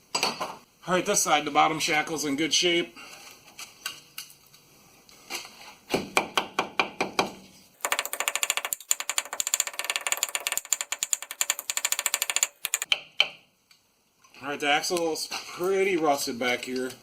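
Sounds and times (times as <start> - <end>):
tool clicking and rattling: 7.8 - 12.9.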